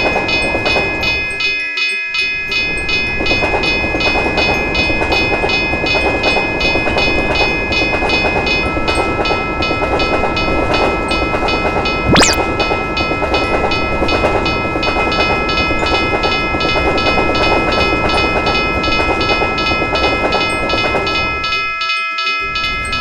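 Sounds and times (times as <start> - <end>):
fast rising sweep: 12.1 - 12.4
steady tone: 12.1 - 12.4.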